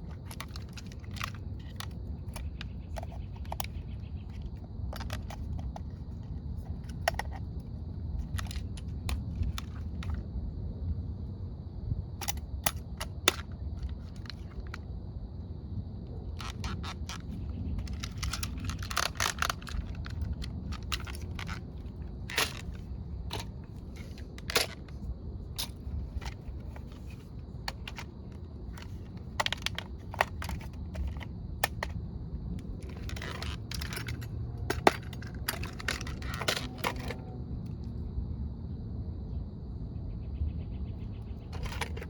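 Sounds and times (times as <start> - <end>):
toy excavator motor hum: 0.0 - 7.4, 12.2 - 14.8, 16.4 - 25.0, 25.6 - 31.9, 32.6 - 37.1
crunching scrapes: 0.0 - 7.5, 8.2 - 10.2, 16.4 - 32.0, 32.6 - 37.2, 41.5 - 42.0.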